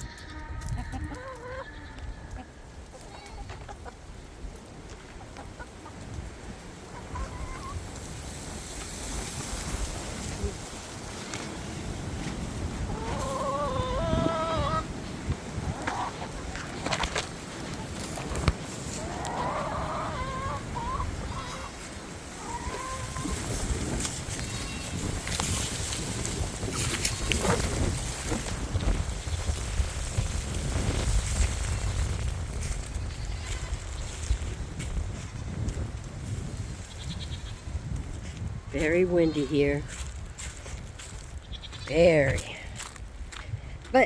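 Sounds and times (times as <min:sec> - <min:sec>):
chicken calling: 0:00.0 - 0:04.0, 0:06.9 - 0:07.8, 0:12.8 - 0:15.0, 0:15.6 - 0:17.0, 0:18.8 - 0:25.4
chickens clucking: 0:00.0 - 0:09.0, 0:12.2 - 0:35.9
wind rumble on microphone: 0:00.0 - 0:44.0.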